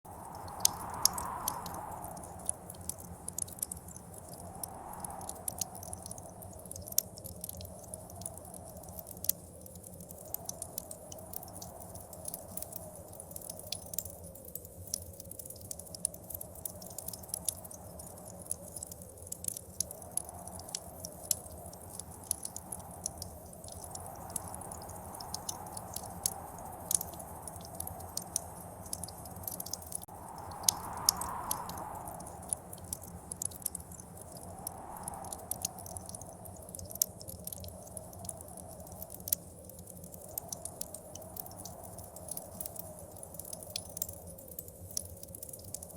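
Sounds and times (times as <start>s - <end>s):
wind whistling: 0.1s - 6.6s, 19.9s - 36.8s
wood fire crackling and popping: 0.1s - 45.9s.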